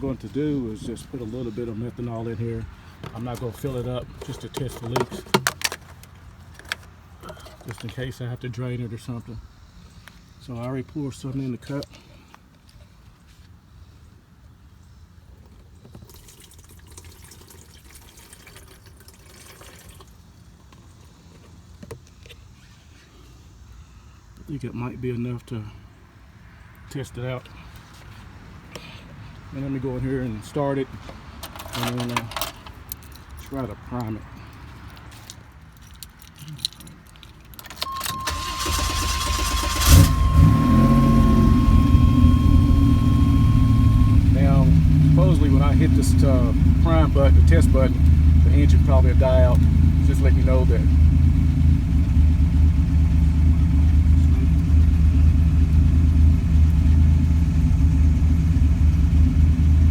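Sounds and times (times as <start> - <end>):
car engine cranking and idling: 0.0 - 8.3, 35.8 - 59.9
liquid trickling and splashing: 16.0 - 20.3
steady high-pitched tone: 40.0 - 45.9.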